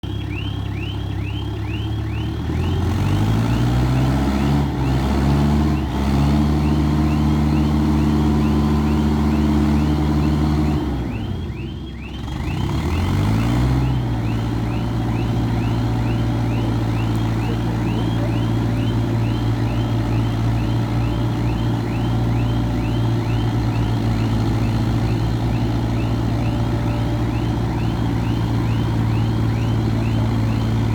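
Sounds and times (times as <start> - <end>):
vehicle engine revving: 0.0 - 30.9
high fast repeated chirp: 14.6 - 30.9.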